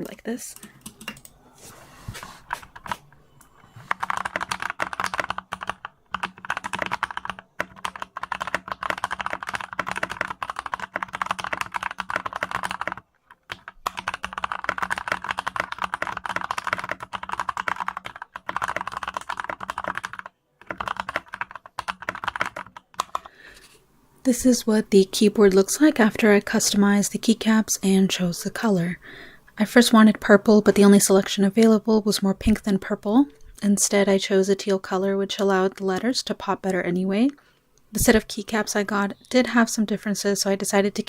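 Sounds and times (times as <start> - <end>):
mechanical keyboard typing: 0.6 - 1.3, 3.9 - 23.3.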